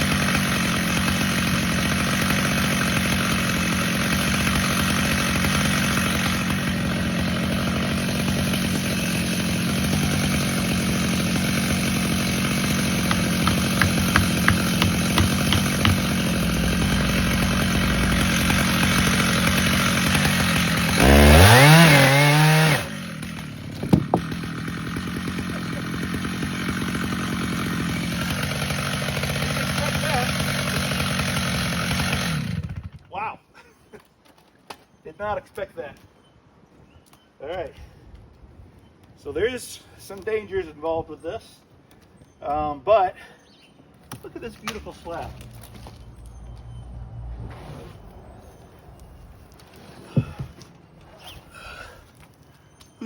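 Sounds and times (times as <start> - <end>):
chainsaw cutting log: 0.0 - 33.0, 47.5 - 52.4.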